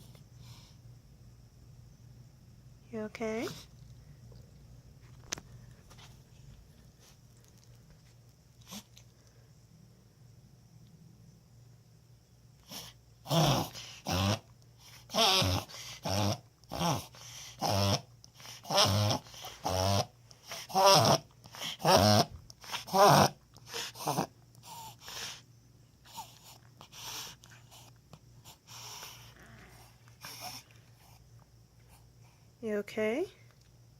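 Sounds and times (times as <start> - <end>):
dog making noisy breaths: 12.6 - 32.5.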